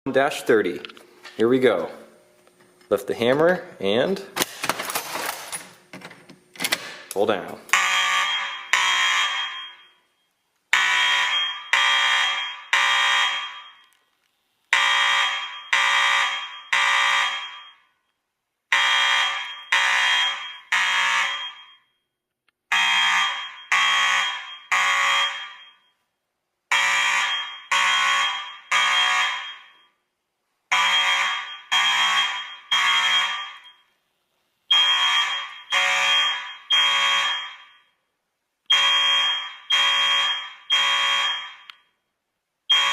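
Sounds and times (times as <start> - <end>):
fire alarm blasts: 7.7 - 14.0, 14.7 - 18.1, 18.7 - 22.0, 22.7 - 26.0, 26.7 - 30.0, 30.7 - 34.0, 34.7 - 38.0, 38.7 - 42.0, 42.7 - 42.9.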